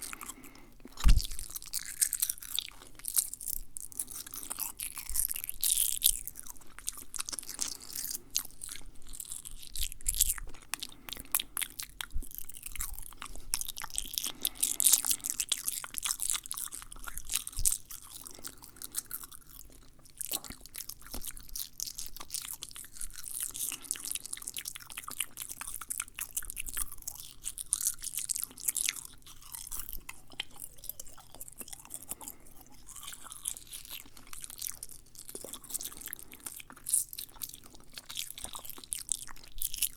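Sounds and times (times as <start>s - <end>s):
wet mouth clicks and smacks: 0.0s - 19.1s.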